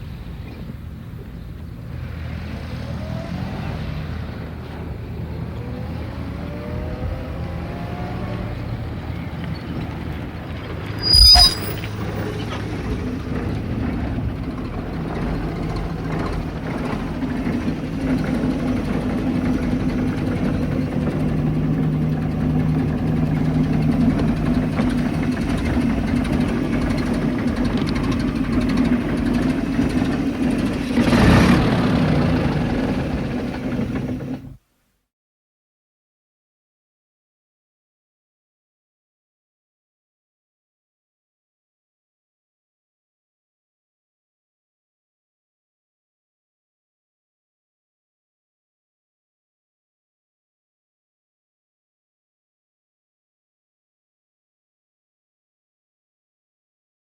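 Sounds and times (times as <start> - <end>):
brake squeal: 9.1 - 13.2.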